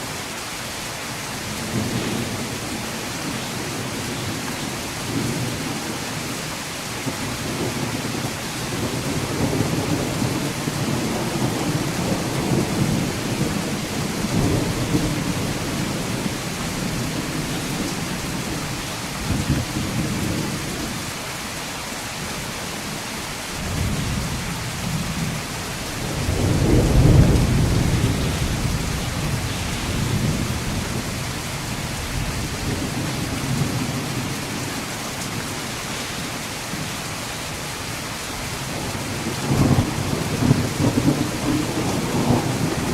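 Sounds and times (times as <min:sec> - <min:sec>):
steady rain hiss: 0:00.0 - 0:42.9
rolling thunder rumbles: 0:07.0 - 0:21.1, 0:23.5 - 0:42.9.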